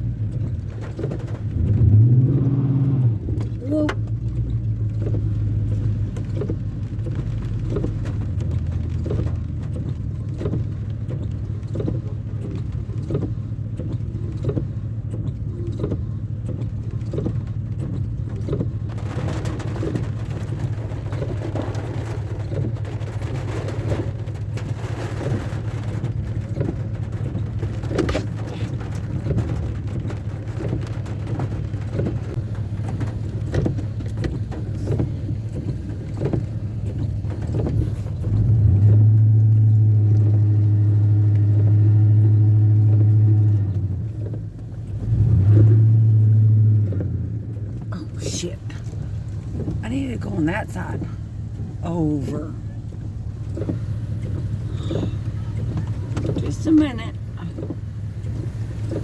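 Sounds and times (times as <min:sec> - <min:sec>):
vehicle engine and road rumble: 0:00.0 - 0:59.0.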